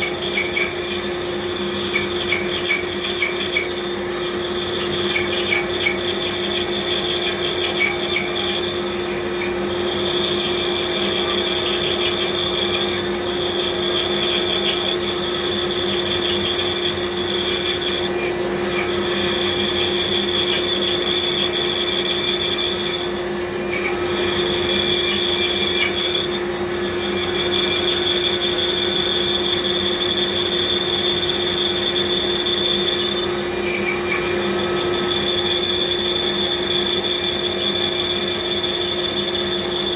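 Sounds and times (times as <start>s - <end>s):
bandsaw cutting wood: 0.0s - 39.9s.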